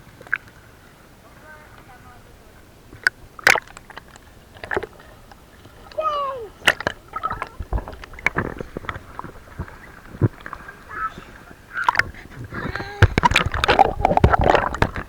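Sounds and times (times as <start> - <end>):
water splashing: 0.0 - 15.0
child crying out: 6.0 - 6.6.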